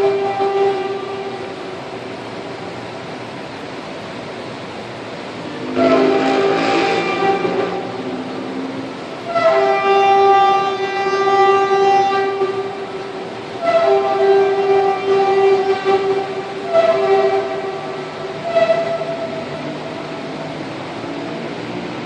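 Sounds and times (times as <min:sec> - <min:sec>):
train horn blasts: 0:00.0 - 0:02.4, 0:05.4 - 0:20.3.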